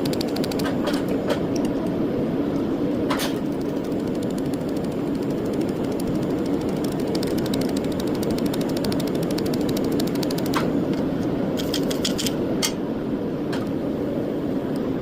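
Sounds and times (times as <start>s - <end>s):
rapid ticking: 0.0s - 1.0s, 3.4s - 10.7s
sharp clicks: 0.0s - 1.9s, 3.2s - 10.7s
machine humming: 0.0s - 12.1s.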